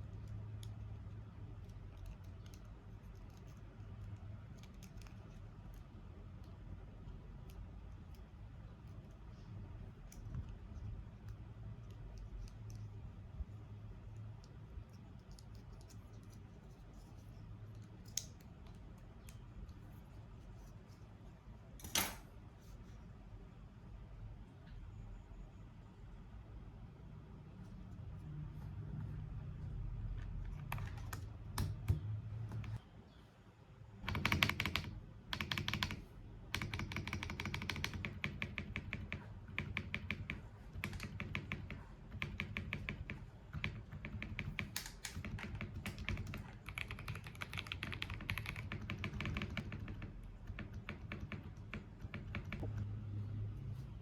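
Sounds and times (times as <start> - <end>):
mechanical keyboard typing: 30.3 - 32.8, 34.0 - 52.8.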